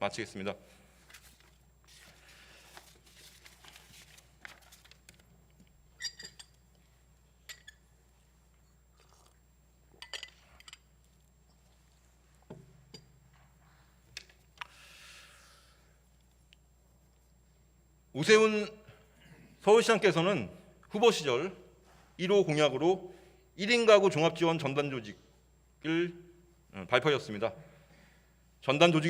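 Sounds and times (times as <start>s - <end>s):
soft rustle: 0.9s - 5.0s.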